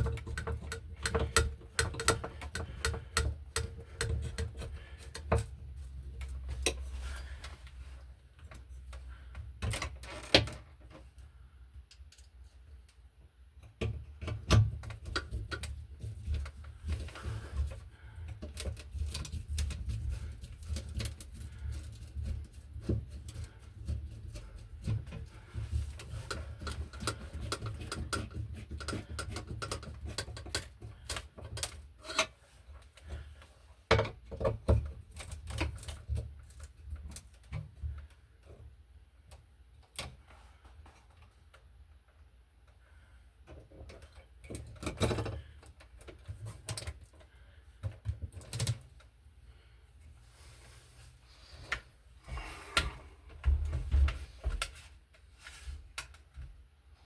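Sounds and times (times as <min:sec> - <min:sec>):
hand tools clicking and tapping: 0:00.0 - 0:06.8, 0:13.6 - 0:33.3.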